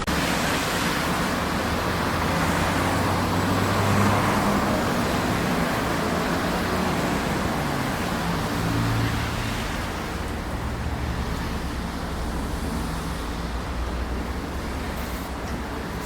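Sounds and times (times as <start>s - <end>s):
road noise: 0.0s - 16.0s
vehicle engine humming: 0.0s - 16.0s.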